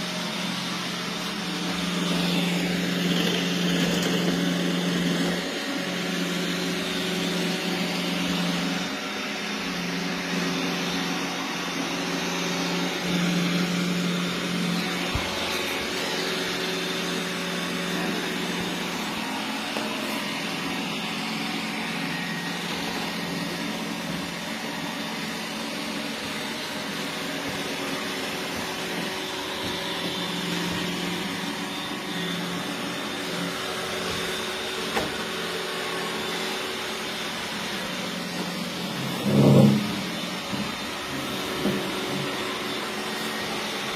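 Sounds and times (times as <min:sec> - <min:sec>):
robot vacuum whirring: 0:00.0 - 0:43.9.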